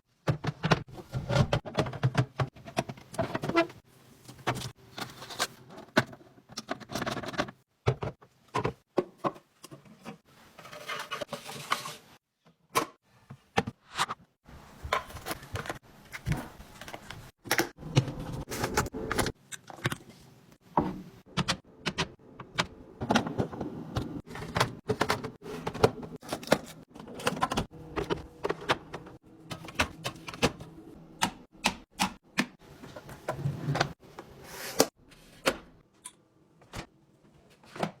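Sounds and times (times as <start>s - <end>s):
containers clicking on fridge shelves: 21.3s - 34.0s.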